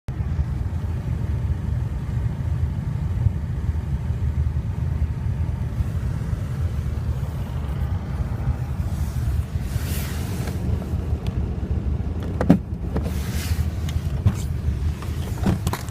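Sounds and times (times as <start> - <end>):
car engine running with knock: 12.1 - 15.9.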